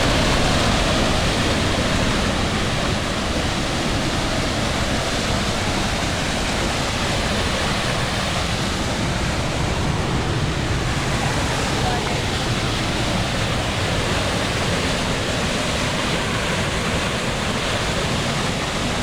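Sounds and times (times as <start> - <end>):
loud rush of water: 0.0 - 19.0.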